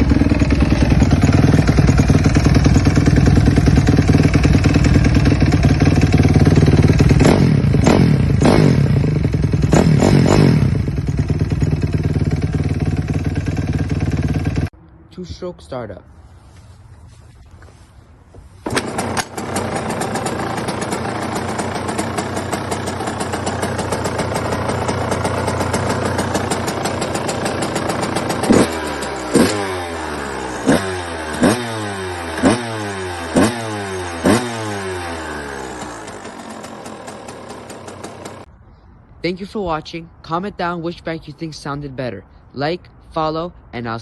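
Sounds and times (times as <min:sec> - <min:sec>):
dirt bike engine revving: 0:00.0 - 0:14.7, 0:18.6 - 0:38.5.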